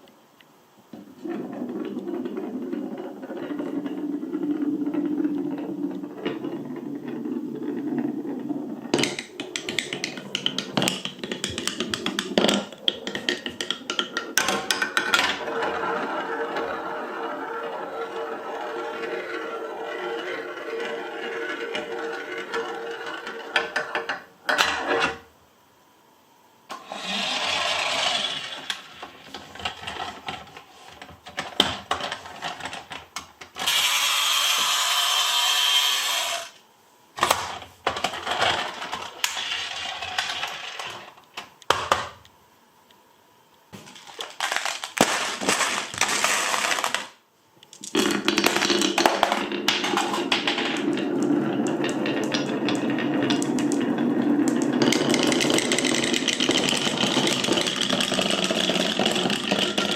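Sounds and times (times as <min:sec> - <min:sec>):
glass marbles clattering on tracks: 0:33.6 - 0:36.5, 0:43.8 - 0:47.2, 0:47.8 - 0:59.9.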